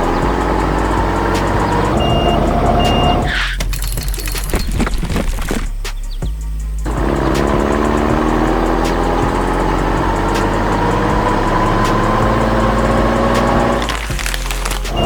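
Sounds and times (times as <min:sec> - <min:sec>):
construction vehicle engine running: 0:00.0 - 0:04.5.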